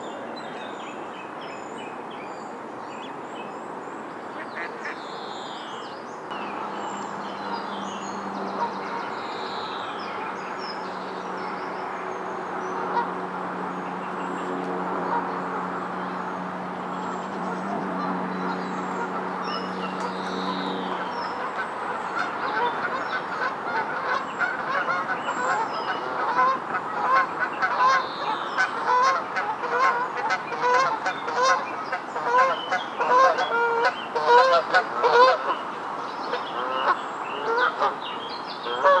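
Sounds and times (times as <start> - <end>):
geese honking: 17.0 - 35.6, 38.7 - 39.0.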